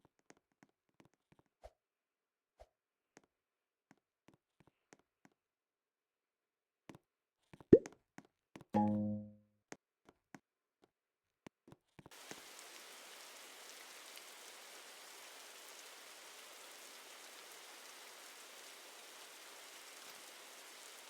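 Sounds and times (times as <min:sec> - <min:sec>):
faint rain-like hiss: 0:12.1 - 0:21.0.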